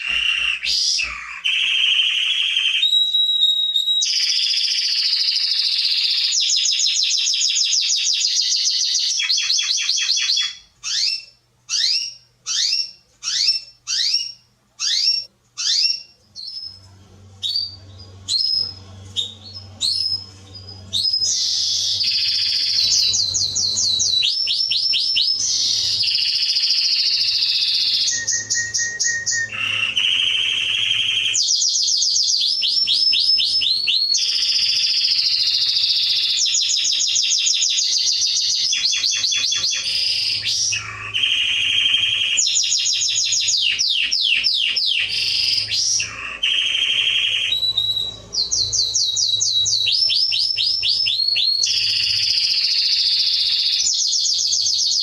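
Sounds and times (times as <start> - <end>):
canary singing trills: 0.0 - 55.0.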